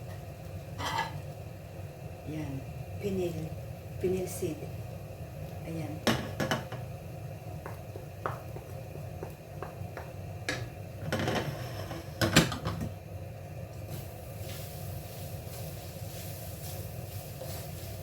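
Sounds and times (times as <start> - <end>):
utensil scraping a pan: 0.8 - 1.2, 11.2 - 12.3.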